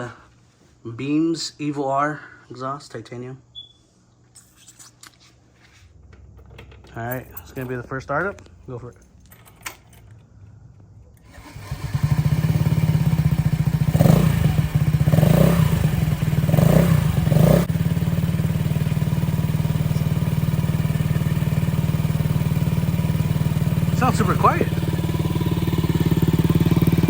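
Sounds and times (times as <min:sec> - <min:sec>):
scooter engine starting and idling: 0:11.2 - 0:27.0
scooter throttle blips: 0:11.3 - 0:27.0.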